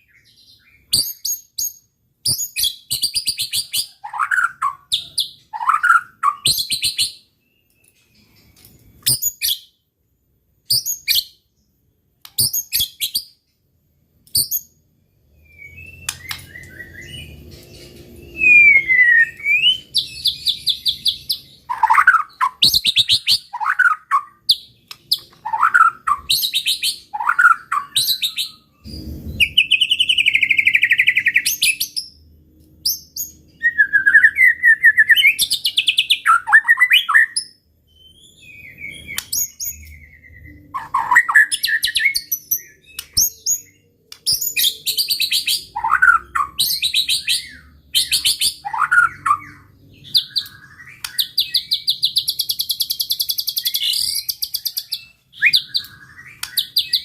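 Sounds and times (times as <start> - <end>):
songbird singing whistles and rattles: 0.0 - 9.8, 10.6 - 11.5, 12.2 - 13.5, 14.2 - 57.0.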